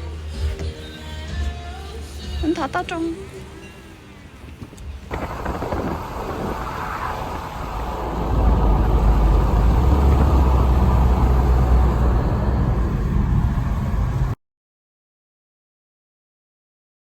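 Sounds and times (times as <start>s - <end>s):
car engine rumbling: 4.5s - 14.4s.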